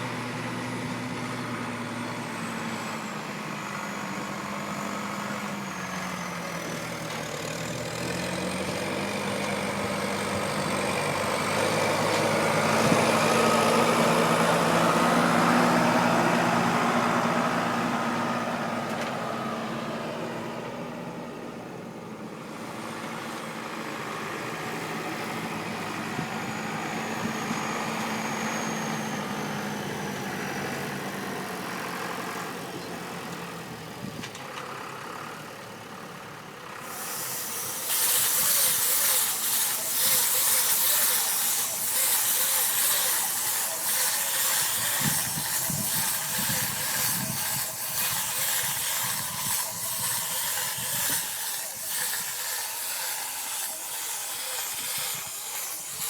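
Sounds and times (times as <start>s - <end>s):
hay baling machinery running: 0.0s - 34.6s, 35.2s - 56.0s
tractor engine hum: 0.0s - 56.0s
loud steady hiss: 36.9s - 56.0s.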